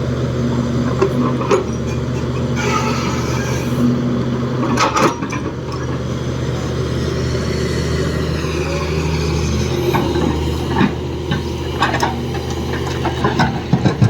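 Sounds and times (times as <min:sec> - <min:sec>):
excavator diesel engine: 0:00.0 - 0:14.0.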